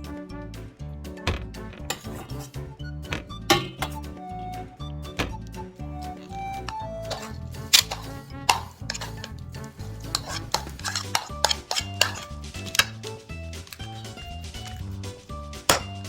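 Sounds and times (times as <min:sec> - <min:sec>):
soft background music: 0:00.0 - 0:16.0
utensil stirring and scraping pot: 0:01.9 - 0:02.6, 0:07.0 - 0:16.0.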